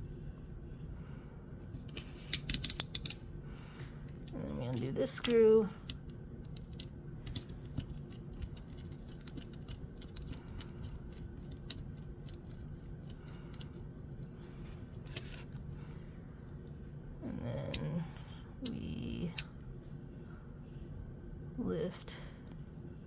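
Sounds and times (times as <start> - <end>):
steady low hum: 0.0 - 23.0
small parts handled: 1.8 - 3.2, 4.0 - 13.8.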